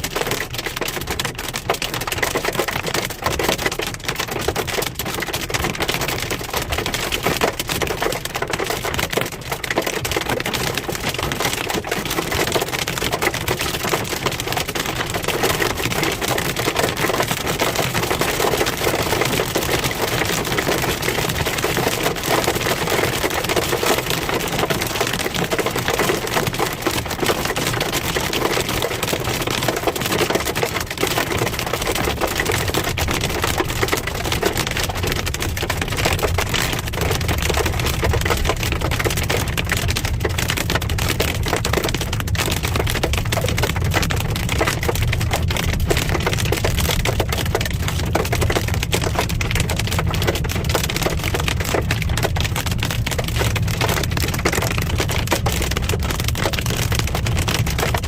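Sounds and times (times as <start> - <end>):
hail clattering on a car: 0.0 - 58.0.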